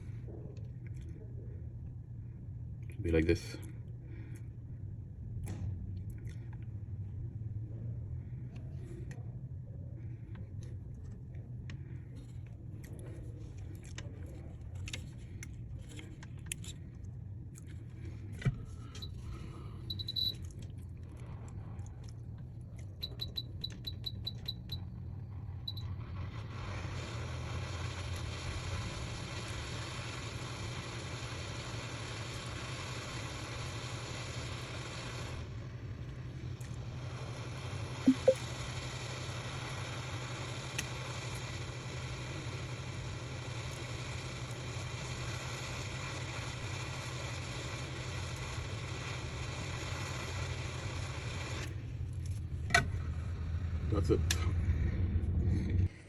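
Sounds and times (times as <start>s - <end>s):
low steady hum: 0.0s - 56.0s
short high beeps: 19.9s - 20.4s, 38.1s - 38.4s.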